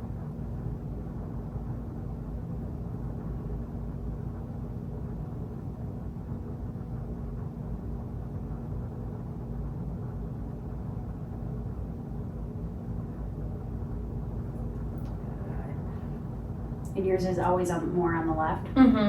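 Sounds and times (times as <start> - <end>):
faint hum: 0.0 - 19.0.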